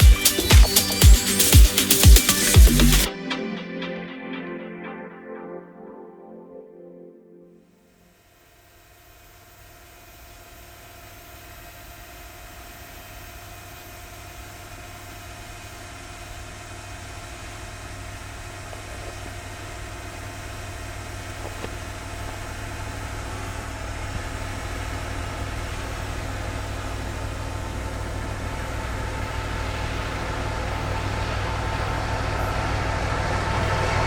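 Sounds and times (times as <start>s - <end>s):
locomotive engine humming: 21.9s - 34.0s.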